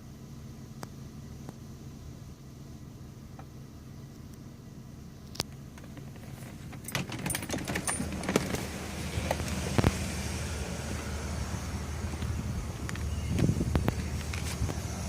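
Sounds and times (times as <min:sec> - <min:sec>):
car engine low hum: 0:00.0 - 0:15.0
keys jangling: 0:06.8 - 0:08.7.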